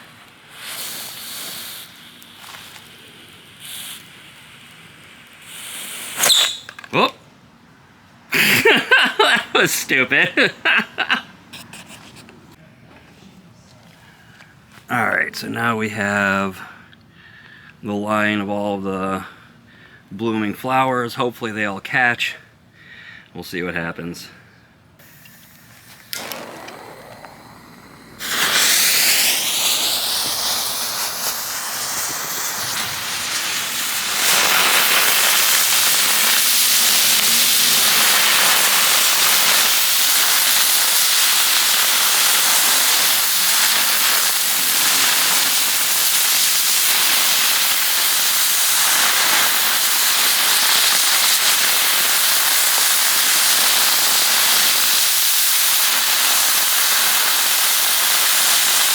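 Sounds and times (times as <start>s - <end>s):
fireworks hissing: 0.0s - 7.1s, 8.3s - 11.8s, 25.0s - 58.9s
fireworks whistling: 0.0s - 7.1s, 25.0s - 58.9s.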